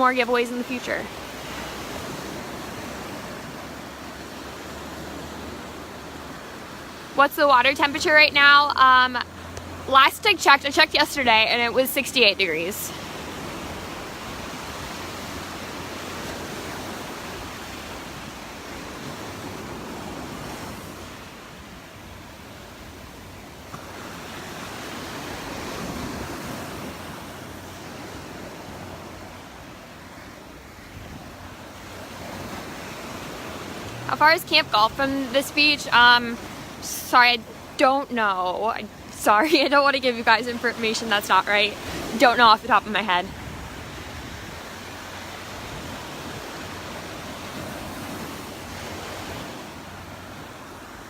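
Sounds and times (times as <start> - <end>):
surf breaking on beach: 0.0 - 51.0
wind on microphone: 43.1 - 49.8.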